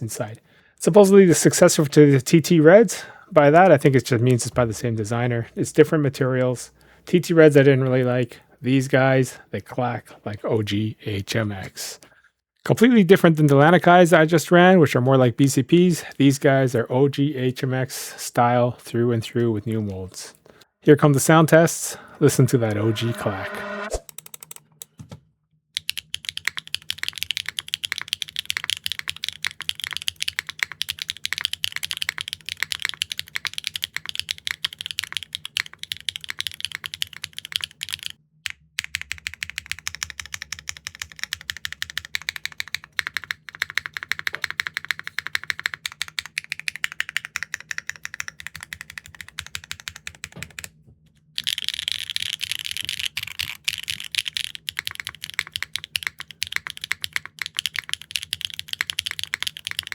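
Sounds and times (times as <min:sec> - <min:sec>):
fast typing on mechanical keyboard: 0:24.1 - 0:24.6, 0:25.8 - 0:38.2, 0:38.8 - 0:50.7, 0:51.4 - 0:59.9.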